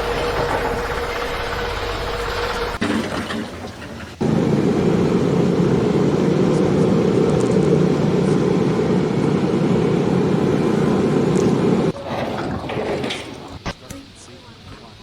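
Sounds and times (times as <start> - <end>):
loud machinery running: 0.0 - 3.4, 4.1 - 12.0.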